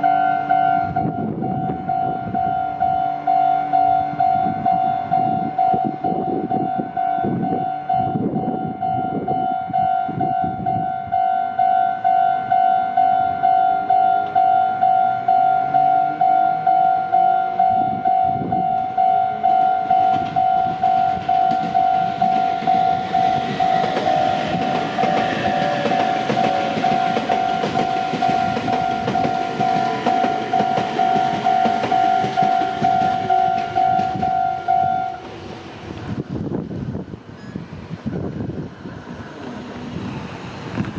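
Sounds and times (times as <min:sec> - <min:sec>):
level-crossing warning bell ringing: 0:00.0 - 0:35.3
electric train passing: 0:00.0 - 0:40.9
train wheel clatter: 0:19.7 - 0:38.7.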